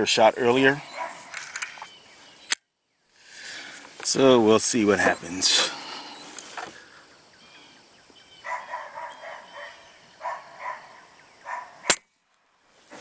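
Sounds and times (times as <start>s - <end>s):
short bird calls: 5.0s - 12.0s
pellet pistol shot: 11.8s - 12.1s.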